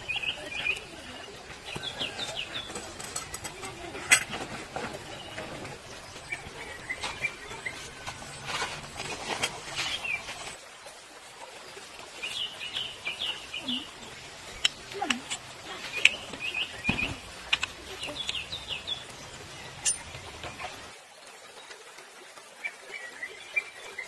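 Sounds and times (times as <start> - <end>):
clicks and rustling: 1.7 - 5.8.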